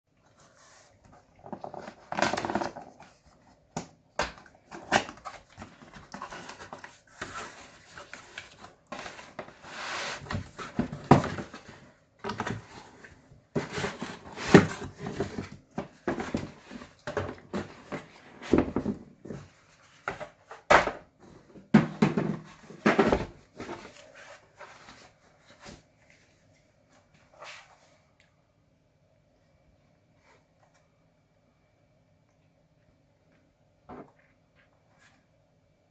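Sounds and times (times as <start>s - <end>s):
packaging rustling and scraping: 0.3s - 3.7s, 4.4s - 25.9s.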